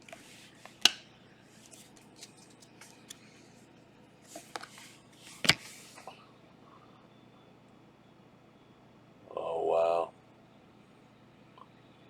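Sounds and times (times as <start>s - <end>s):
cards sliding: 0.0s - 1.0s, 4.3s - 6.1s.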